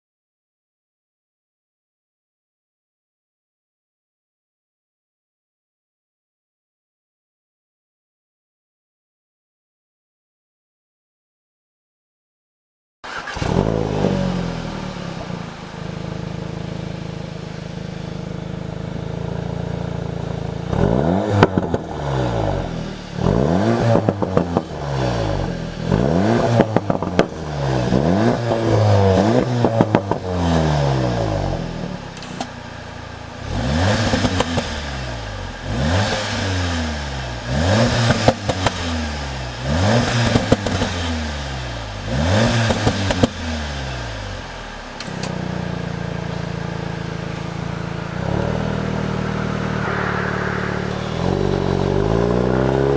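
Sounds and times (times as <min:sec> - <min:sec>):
car engine revving: 0:13.1 - 0:32.4, 0:33.4 - 0:45.3, 0:46.0 - 0:52.9.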